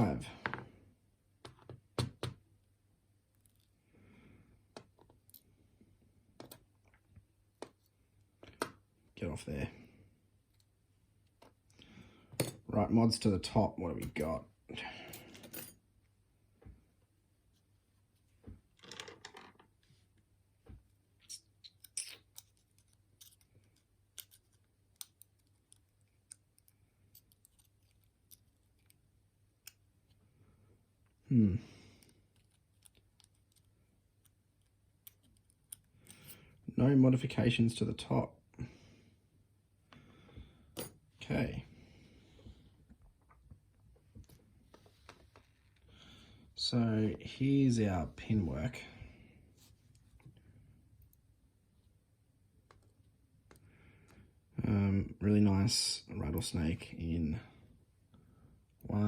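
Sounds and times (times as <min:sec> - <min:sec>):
small metal parts clicking: 0:21.2 - 0:29.0.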